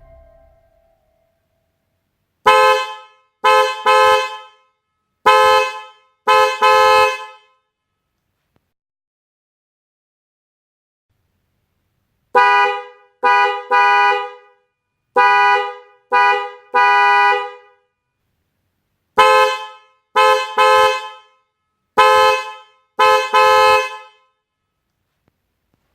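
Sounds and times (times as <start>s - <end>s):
electric car horns honking: 19.2s - 21.2s.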